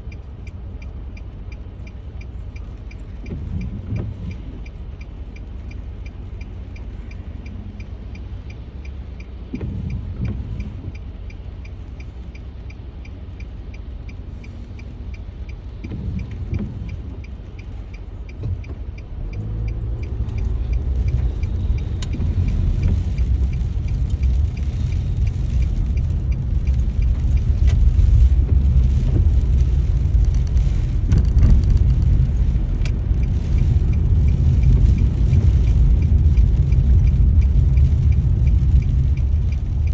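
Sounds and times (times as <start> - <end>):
car engine rumble: 0.0 - 39.9
turn signal clicking: 0.0 - 39.9
tyre noise on wet road: 13.6 - 39.9.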